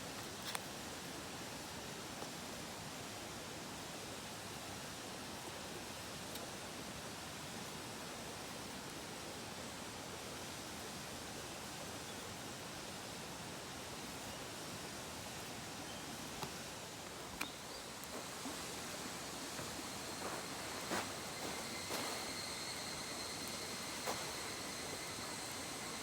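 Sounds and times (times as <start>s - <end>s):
mountain stream rushing: 16.8s - 26.0s.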